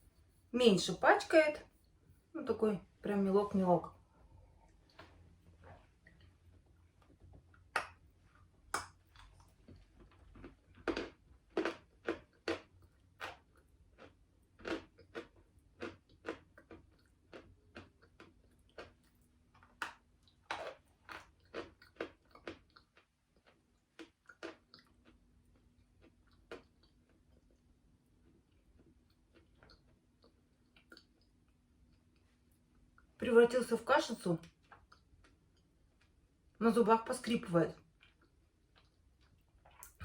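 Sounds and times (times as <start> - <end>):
person chewing crunchy chalk: 9.1 - 27.6.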